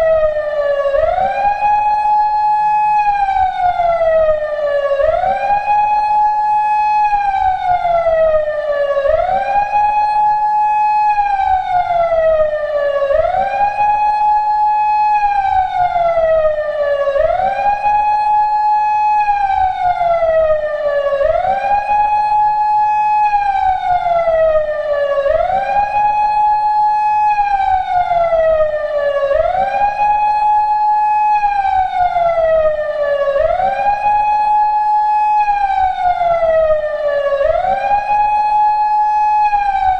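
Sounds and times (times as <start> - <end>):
wailing electronic siren: 0.0 - 39.9.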